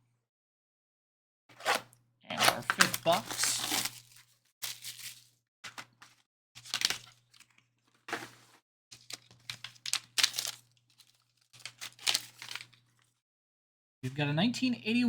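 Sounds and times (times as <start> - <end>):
packaging torn and crinkled: 1.6 - 5.3, 6.6 - 7.6, 9.0 - 13.1.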